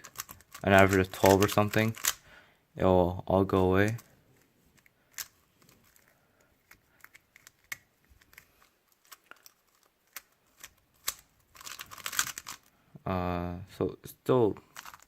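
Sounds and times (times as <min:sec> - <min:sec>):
puzzle cube clicking: 0:00.0 - 0:02.3, 0:03.8 - 0:12.7, 0:14.7 - 0:15.0.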